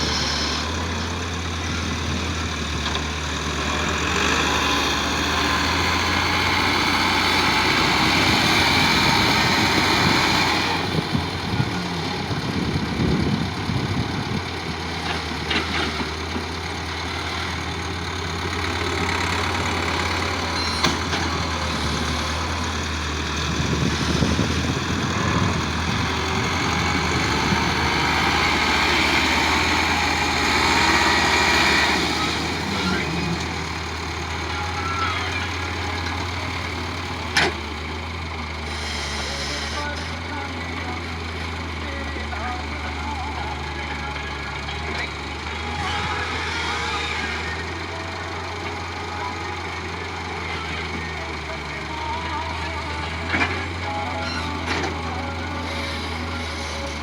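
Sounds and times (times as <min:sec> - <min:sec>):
diesel machinery engine running: 0:00.0 - 0:57.0.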